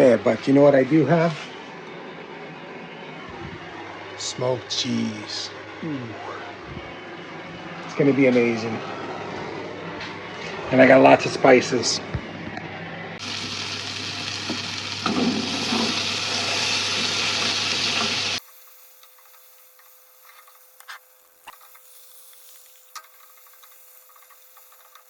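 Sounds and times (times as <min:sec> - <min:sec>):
dumplings sizzling in a pan: 0:13.2 - 0:25.0.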